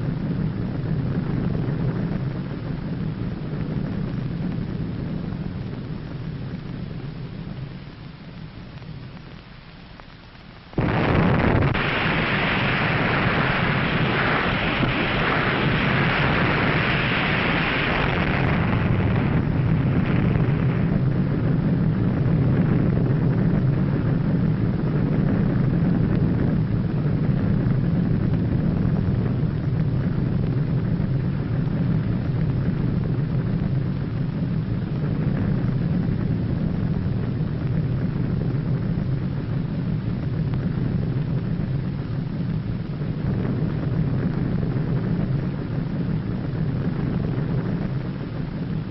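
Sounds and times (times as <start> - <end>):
low rumble: 0.0 - 48.9
dense rushing hiss: 10.3 - 22.0
explosion blast: 10.8 - 23.0.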